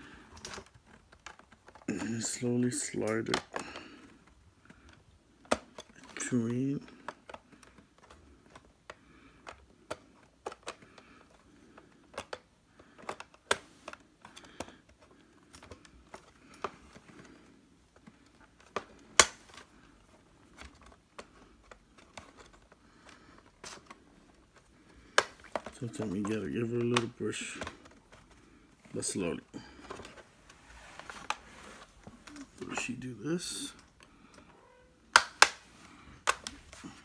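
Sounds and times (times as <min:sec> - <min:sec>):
plastic clicks and taps: 0:04.6 - 0:17.2, 0:18.0 - 0:19.6, 0:25.0 - 0:28.0, 0:35.1 - 0:35.6, 0:36.2 - 0:36.6
plastic cover snapping: 0:18.0 - 0:19.7, 0:20.5 - 0:28.3, 0:35.1 - 0:37.0.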